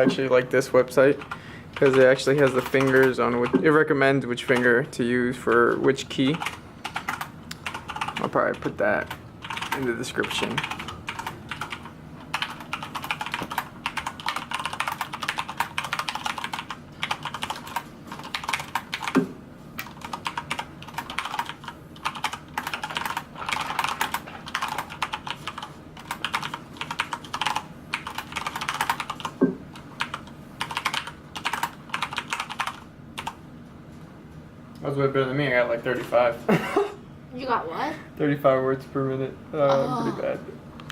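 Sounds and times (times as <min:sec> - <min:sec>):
mechanical keyboard typing: 0:01.2 - 0:03.7, 0:04.4 - 0:04.8, 0:05.5 - 0:19.2, 0:19.8 - 0:29.4, 0:30.0 - 0:33.4.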